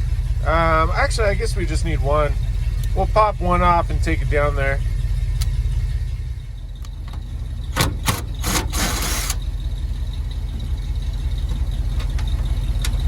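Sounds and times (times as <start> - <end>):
steady low rumble: 0.0 - 13.0
harsh tool burst: 8.0 - 9.4.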